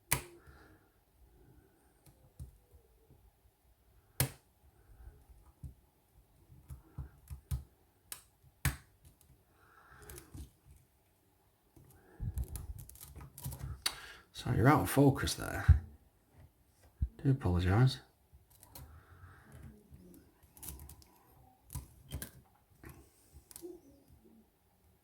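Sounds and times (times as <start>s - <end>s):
faint handling noise: 15.3s - 24.4s.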